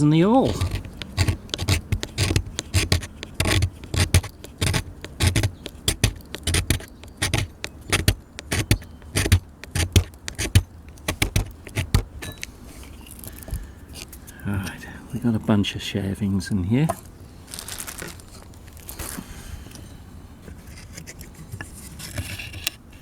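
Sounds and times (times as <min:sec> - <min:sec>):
awl scraping wood shavings: 0:00.0 - 0:12.0, 0:20.5 - 0:23.0.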